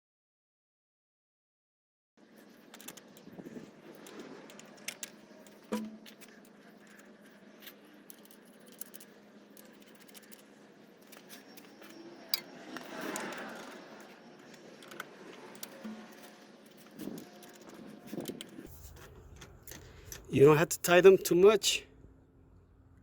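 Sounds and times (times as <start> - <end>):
small clicks and knocks: 2.4 - 20.2.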